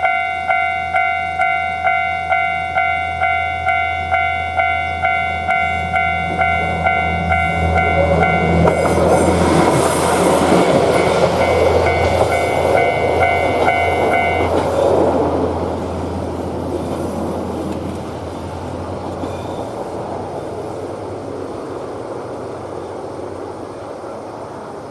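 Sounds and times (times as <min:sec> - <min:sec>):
train rumble: 0:00.0 - 0:24.9
level crossing alarm chime: 0:11.2 - 0:14.5.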